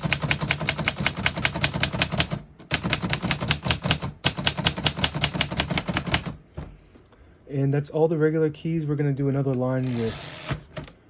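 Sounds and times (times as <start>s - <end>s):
typewriter typing: 0.0s - 6.4s, 9.8s - 11.0s.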